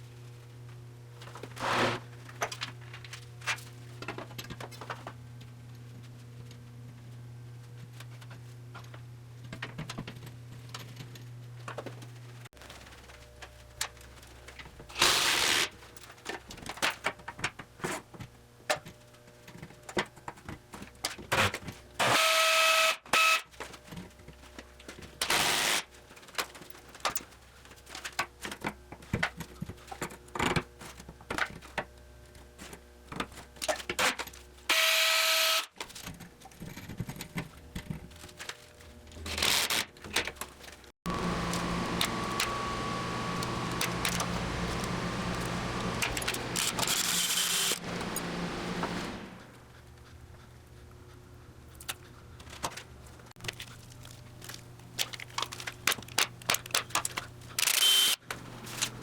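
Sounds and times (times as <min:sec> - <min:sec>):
power tool whine: 0:34.7 - 0:35.7, 0:41.1 - 0:49.7, 0:57.6 - 0:58.2.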